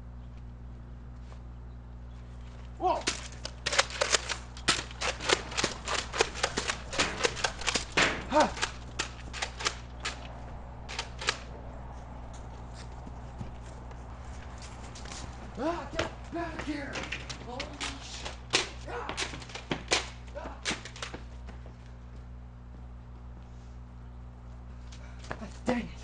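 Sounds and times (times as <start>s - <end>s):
toy dart blasters popping: 2.9s - 10.3s, 10.9s - 11.5s, 17.6s - 21.2s.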